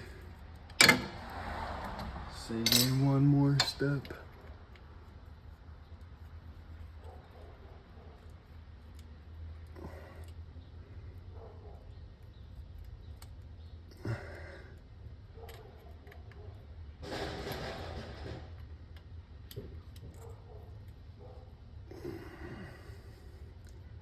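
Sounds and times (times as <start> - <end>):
rustling scraping noise: 17.0 - 18.6.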